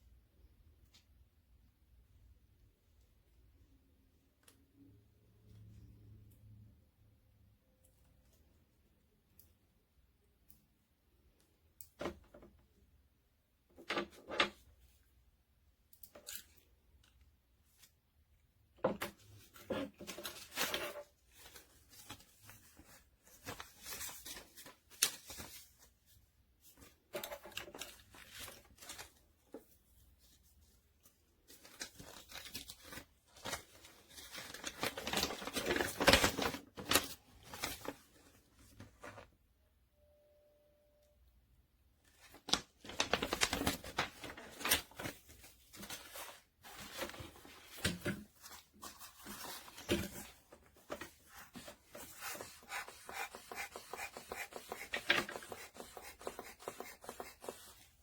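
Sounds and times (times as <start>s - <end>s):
rasping and rustling handling noises: 42.1s - 58.0s.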